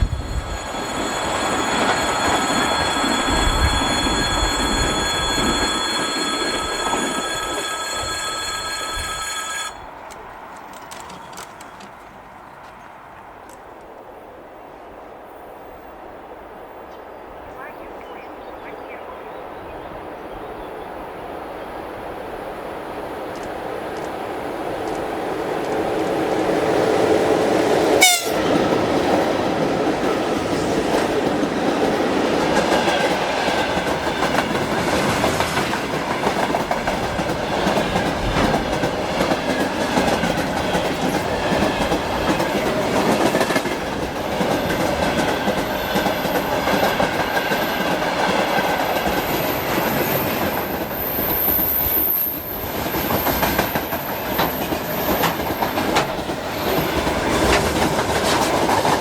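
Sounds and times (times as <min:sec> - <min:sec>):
electric train passing at speed: 0:00.0 - 0:59.0
wheels clattering over rail joints: 0:52.5 - 0:59.0.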